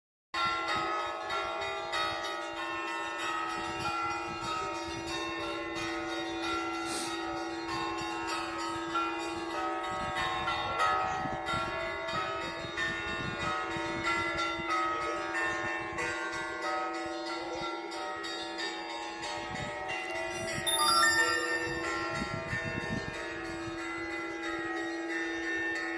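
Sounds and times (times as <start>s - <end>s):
church bells ringing: 0.4s - 25.9s
low ringing bell note: 20.5s - 23.5s.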